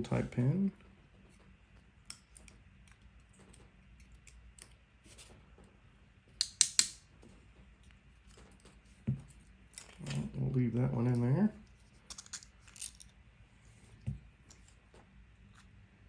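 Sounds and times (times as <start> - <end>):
small metal lock parts clicking: 2.1 - 4.8, 11.9 - 13.2.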